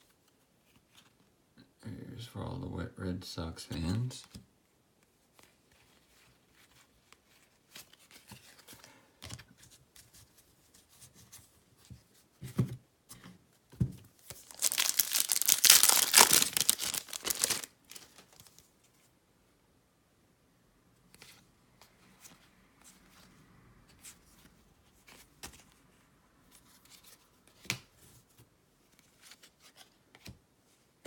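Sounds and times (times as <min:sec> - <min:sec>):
wrapper tearing with crinkling rip: 0:14.3 - 0:18.6.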